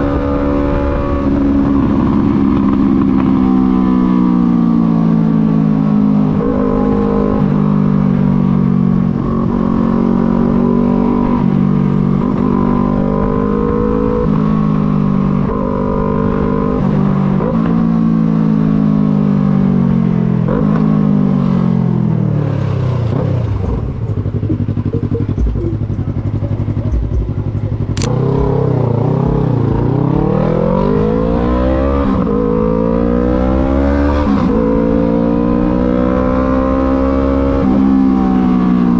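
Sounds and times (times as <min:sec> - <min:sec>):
motorcycle engine shifting gears: 0:00.0 - 0:38.9
sharp click: 0:26.9 - 0:28.3.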